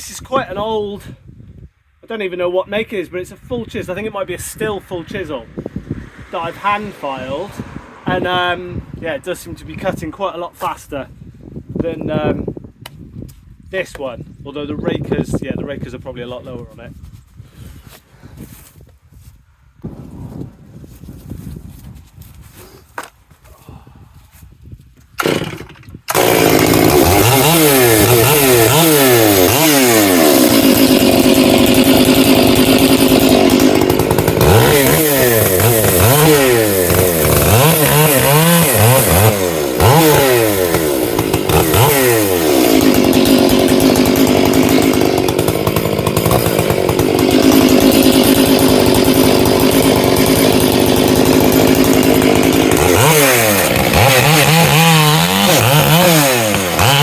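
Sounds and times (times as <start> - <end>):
chainsaw revving and cutting: 4.6 - 8.7, 25.2 - 57.0.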